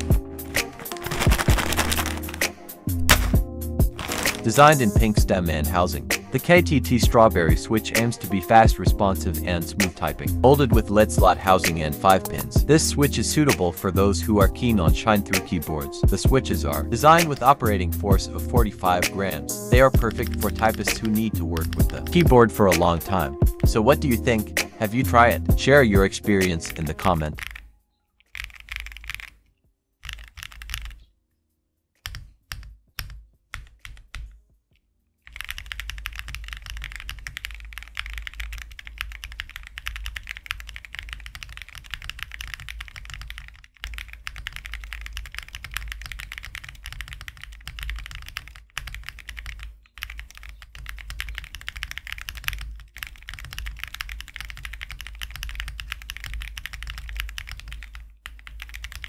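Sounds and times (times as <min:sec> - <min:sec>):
mechanical keyboard typing: 0:00.0 - 0:02.5, 0:19.8 - 0:24.3, 0:26.4 - 0:27.7, 0:28.3 - 0:29.4, 0:30.0 - 0:31.0, 0:32.0 - 0:34.3, 0:35.3 - 0:59.0.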